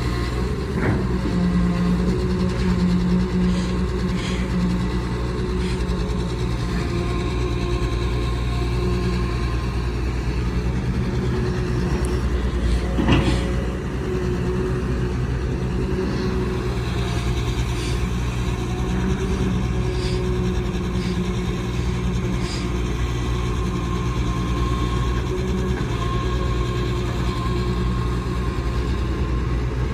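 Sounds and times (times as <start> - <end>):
excavator diesel engine running: 0.0 - 29.9.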